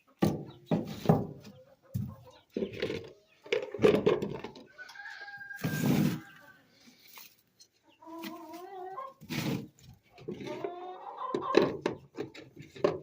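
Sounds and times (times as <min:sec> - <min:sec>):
hens clucking and calling: 0:00.0 - 0:13.0
sharp knocks and bumps: 0:00.2 - 0:01.4.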